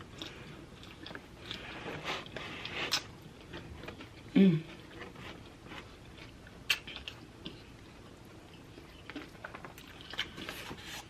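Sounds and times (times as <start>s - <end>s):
person chewing: 0.0s - 11.0s.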